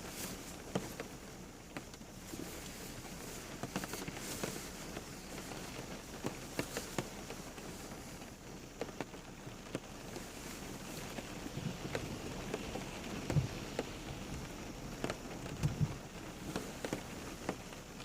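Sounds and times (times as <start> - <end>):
rain drops pattering on hard surface: 0.0 - 18.0.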